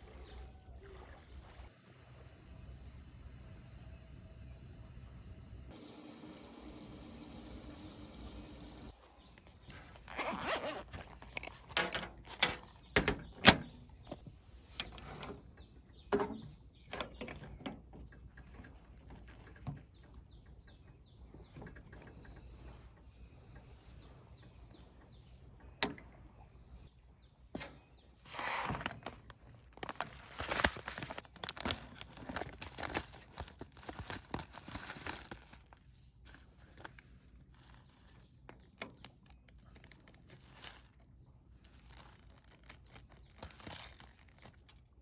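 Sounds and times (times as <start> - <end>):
birds chirping: 2.2 - 29.2
rustling: 9.4 - 15.4, 27.6 - 45.0
camping gear knocks and clicks: 9.6 - 20.2, 27.5 - 35.5.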